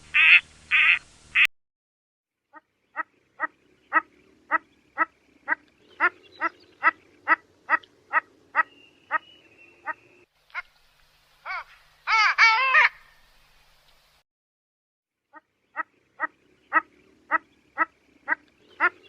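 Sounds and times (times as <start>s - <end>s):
duck quacking: 0.1s - 1.5s, 2.5s - 10.7s, 15.3s - 19.0s.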